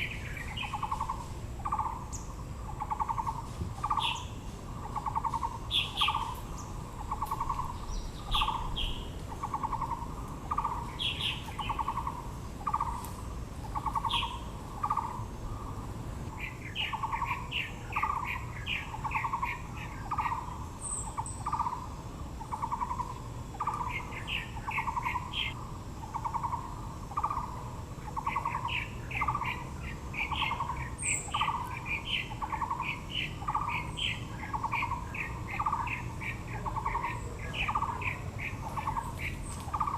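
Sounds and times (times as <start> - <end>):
bird pulsing low note: 0.0 - 13.0
very high bird chirps: 0.0 - 13.0, 13.6 - 15.2, 16.4 - 39.9
birds chirping: 0.0 - 39.9.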